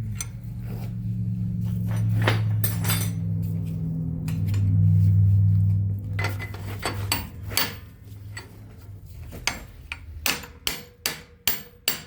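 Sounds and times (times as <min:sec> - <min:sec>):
low hum: 0:00.0 - 0:10.7
steel tools clinking on metal: 0:02.6 - 0:03.2.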